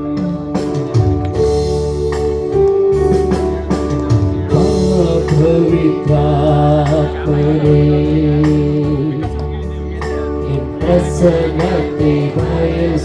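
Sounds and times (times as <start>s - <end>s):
worship band music: 0.0s - 13.0s
person singing: 4.3s - 13.0s.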